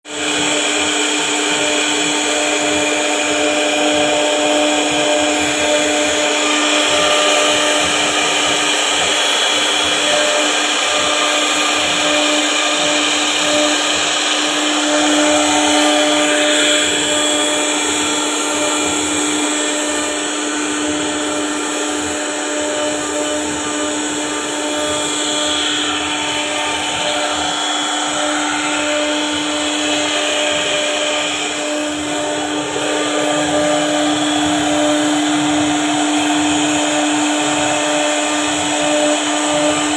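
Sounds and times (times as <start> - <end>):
router spindle whine: 0.0 - 39.9
wood cutting noise: 0.0 - 39.9.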